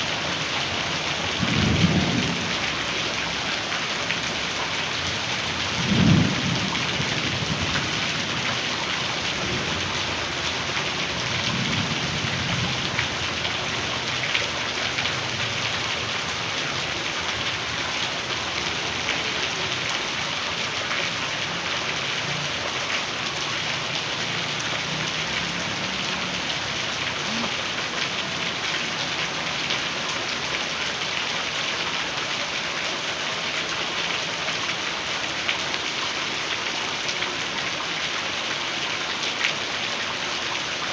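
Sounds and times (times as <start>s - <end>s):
heavy rain pouring: 0.0s - 40.9s
low thunder rumbling: 5.8s - 7.7s.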